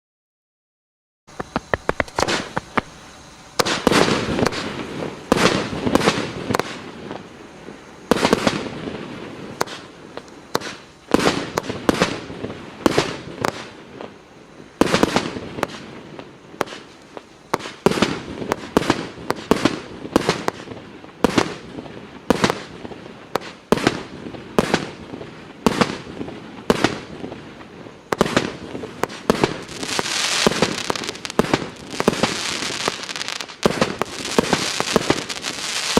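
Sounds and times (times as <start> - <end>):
small pops: 1.3 - 2.9
firework cake firing: 1.3 - 35.9
firework crackling: 1.3 - 35.9.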